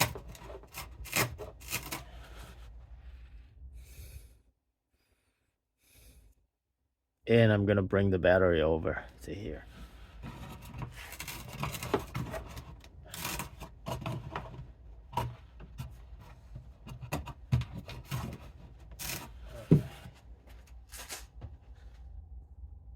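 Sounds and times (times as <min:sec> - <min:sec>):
battery rubbing and knocking: 0:10.2 - 0:20.1.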